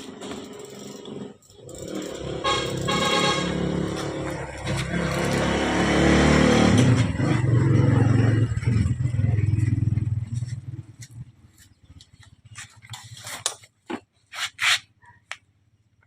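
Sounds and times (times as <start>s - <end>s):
vehicle engine revving: 0.0s - 11.4s.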